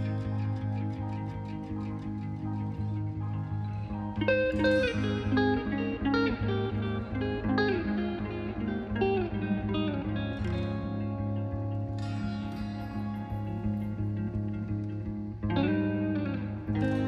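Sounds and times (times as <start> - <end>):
plucked guitar melody: 0.0 - 17.0
steady bass: 0.0 - 17.0.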